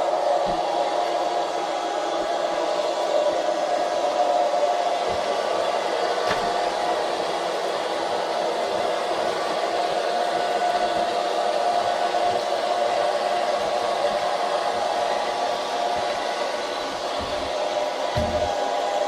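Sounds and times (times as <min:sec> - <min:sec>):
robot vacuum whirring: 0:00.0 - 0:19.0.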